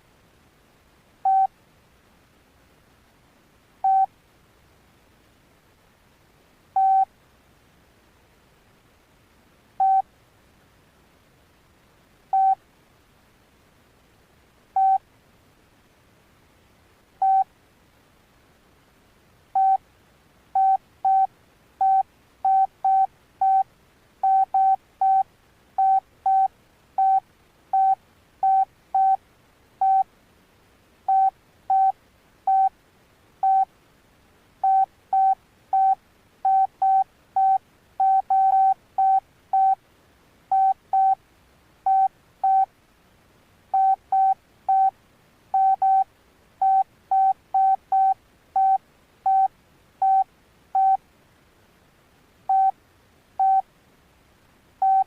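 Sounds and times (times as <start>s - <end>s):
phone keypad beeps: 1.3s - 1.5s, 3.8s - 4.1s, 6.8s - 7.1s, 9.8s - 10.0s, 12.3s - 12.6s, 14.8s - 15.0s, 17.2s - 17.5s, 19.6s - 19.8s, 20.6s - 23.6s, 24.2s - 25.2s, 25.8s - 27.2s, 27.8s - 29.2s, 29.8s - 30.0s, 31.1s - 31.9s, 32.5s - 32.7s, 33.4s - 33.7s, 34.6s - 39.8s, 40.5s - 41.2s, 41.9s - 42.7s, 43.8s - 44.9s, 45.6s - 46.0s, 46.6s - 50.2s, 50.8s - 51.0s, 52.5s - 52.7s, 53.4s - 53.6s.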